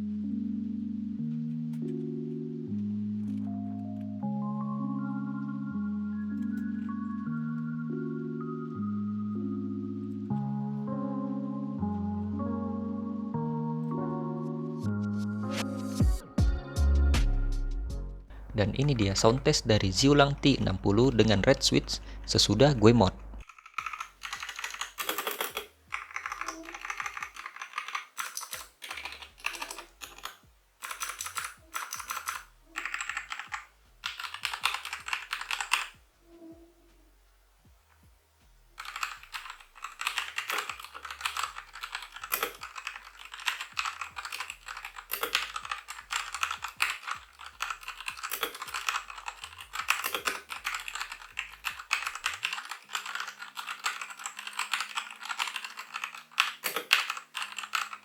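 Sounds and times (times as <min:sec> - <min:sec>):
mechanical keyboard typing: 0:18.6 - 0:36.0, 0:38.8 - 0:58.0.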